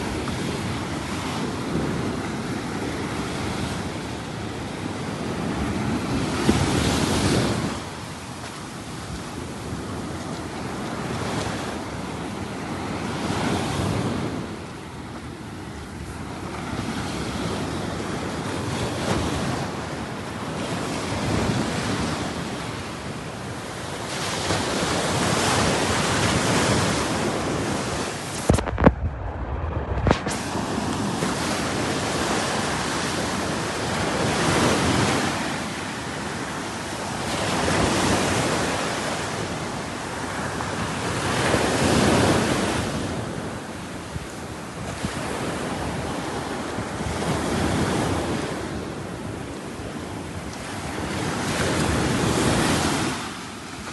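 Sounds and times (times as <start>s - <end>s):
ocean waves washing on shore: 0.0s - 53.9s
wind on microphone: 0.0s - 53.9s
brief low rumble: 28.4s - 31.2s.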